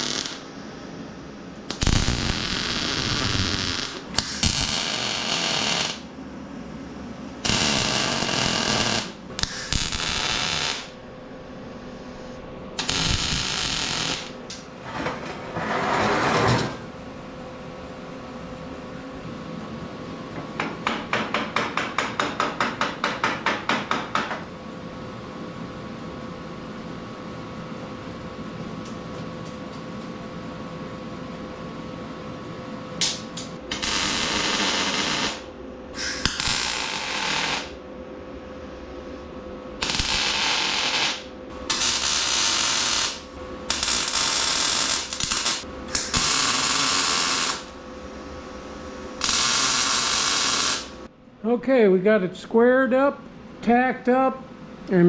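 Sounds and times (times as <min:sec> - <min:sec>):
welder hissing and sizzling: 0:00.0 - 0:00.4, 0:01.7 - 0:06.0, 0:07.5 - 0:10.9, 0:12.8 - 0:14.4, 0:33.7 - 0:37.8, 0:39.8 - 0:47.8, 0:49.2 - 0:51.0.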